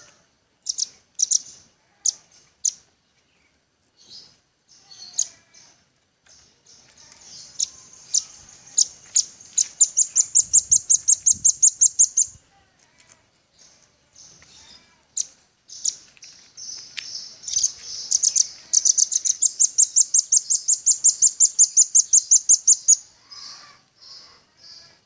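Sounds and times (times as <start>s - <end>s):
nuthatch calling: 0.6s - 2.8s, 6.3s - 12.4s, 14.2s - 24.9s.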